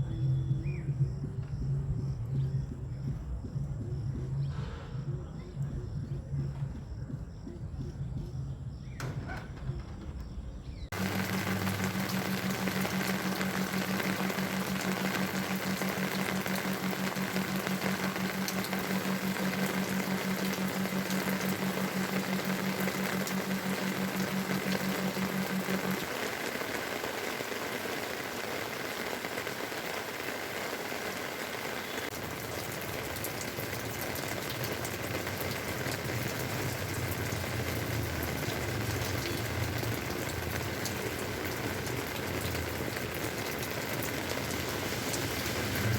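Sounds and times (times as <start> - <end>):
low steady hum: 0.0 - 8.9, 10.8 - 26.3
heavy rain falling: 10.9 - 45.9.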